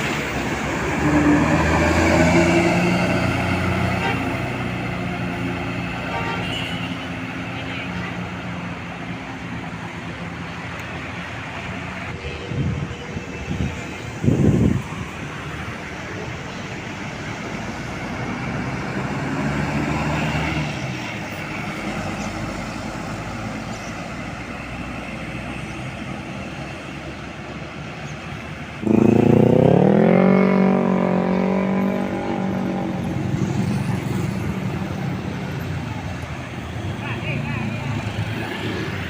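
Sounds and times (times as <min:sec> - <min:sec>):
motor vehicle noise: 0:00.0 - 0:39.0
engine rising in pitch: 0:00.8 - 0:03.9, 0:28.8 - 0:35.2.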